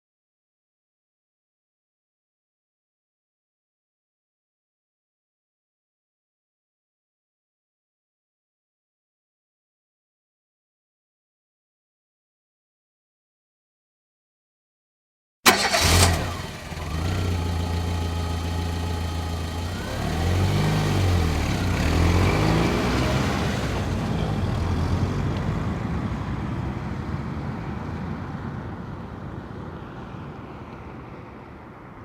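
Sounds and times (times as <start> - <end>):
vehicle engine starting and running: 15.5 - 25.8.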